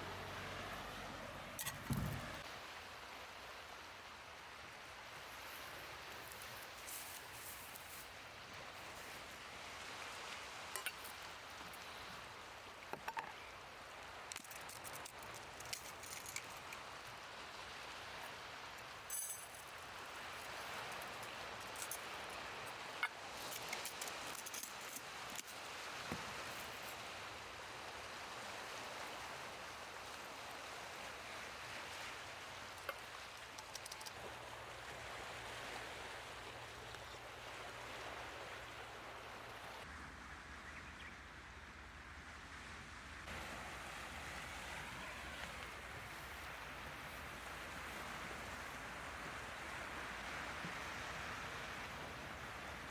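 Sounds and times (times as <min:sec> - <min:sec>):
sea surf: 0:43.3 - 0:52.9.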